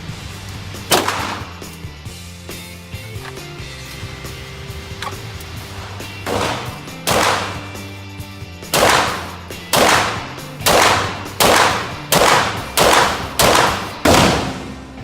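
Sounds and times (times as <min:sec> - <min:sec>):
background music: 0:00.0 - 0:15.0
pistol shots: 0:00.9 - 0:01.9, 0:05.7 - 0:08.0, 0:08.6 - 0:14.8.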